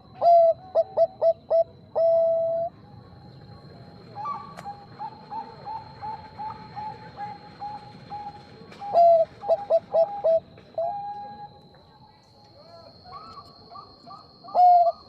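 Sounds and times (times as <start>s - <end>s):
dove cooing: 0.0s - 2.7s, 4.1s - 11.6s, 13.1s - 15.0s
faint high whine: 0.0s - 15.0s.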